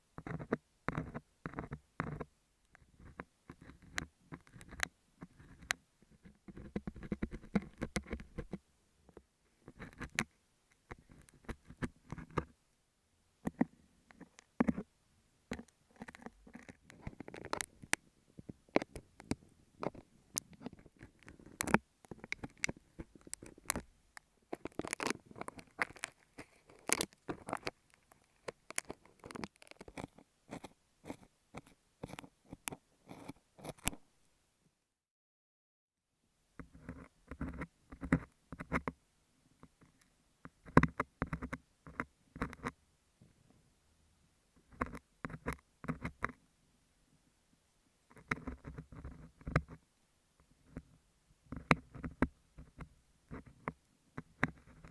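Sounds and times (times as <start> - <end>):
wax sheet crackling on microphones: 24.5 - 30.6.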